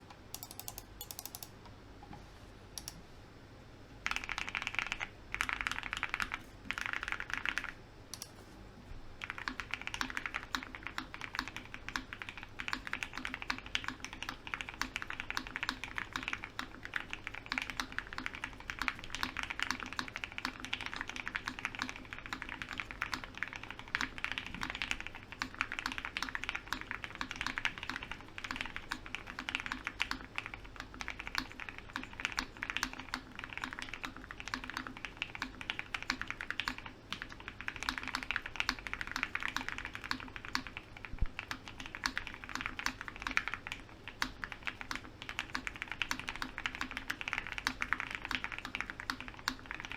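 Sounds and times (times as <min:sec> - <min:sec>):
mechanical keyboard typing: 0:00.3 - 0:01.6, 0:04.0 - 0:08.3, 0:09.2 - 0:49.9.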